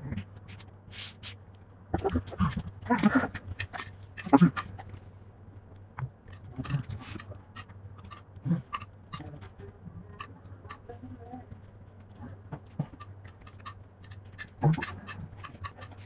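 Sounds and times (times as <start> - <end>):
steady low hum: 0.0 - 16.0
mouth clicks and chewing: 5.8 - 10.9, 11.5 - 16.0.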